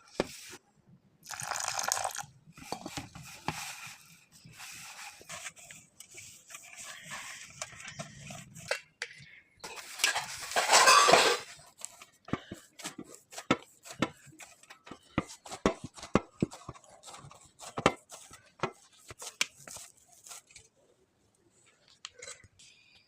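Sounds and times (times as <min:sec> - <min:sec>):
utensils clinking against dishes: 0:09.7 - 0:11.6.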